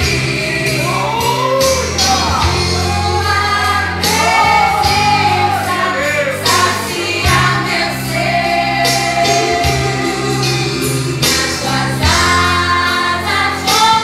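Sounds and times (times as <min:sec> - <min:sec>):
bass and keyboard backing: 0:00.0 - 0:14.0
women singing: 0:00.0 - 0:14.0.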